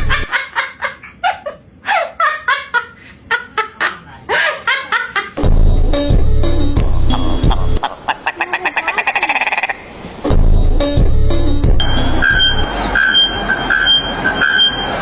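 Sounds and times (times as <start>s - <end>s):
music with heavy beat: 0.0s - 0.3s, 5.4s - 7.8s, 10.3s - 12.7s
bird chattering call: 7.5s - 9.8s.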